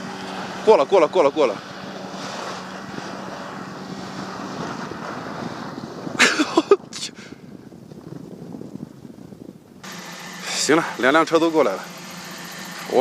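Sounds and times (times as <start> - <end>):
vehicle engine running: 0.0 - 5.3, 9.7 - 13.0
wind noise: 1.6 - 11.3.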